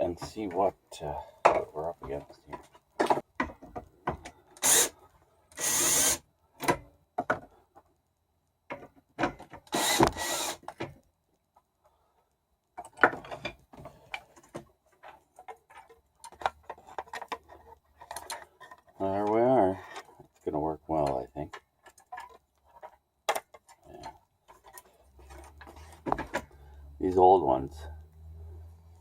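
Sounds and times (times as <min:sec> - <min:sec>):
small clicks and knocks: 0:01.4 - 0:04.6, 0:06.6 - 0:26.7
cordless drill running: 0:04.6 - 0:04.9, 0:05.6 - 0:06.2, 0:09.7 - 0:10.6.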